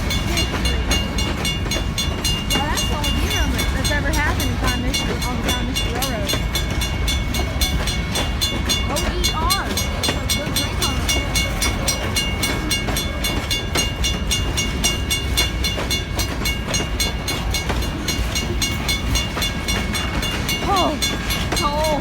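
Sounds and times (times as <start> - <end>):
freight train rumbling past: 0.0 - 22.0.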